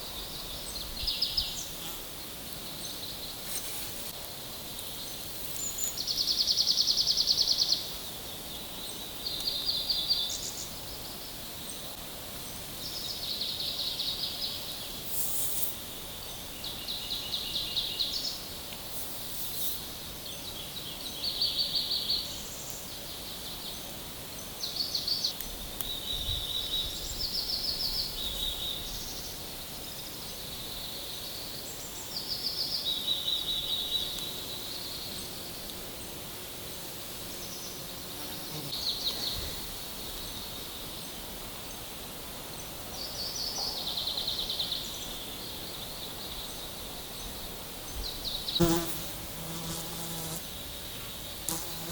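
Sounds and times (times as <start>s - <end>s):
background hiss: 0.0s - 51.9s.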